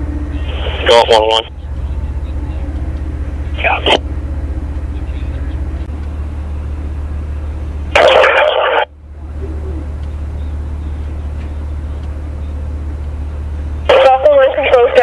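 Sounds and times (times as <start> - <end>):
low hum: 0.0 - 15.0
two-way radio static burst: 0.4 - 1.5, 3.6 - 4.0, 8.0 - 8.9, 13.9 - 15.0.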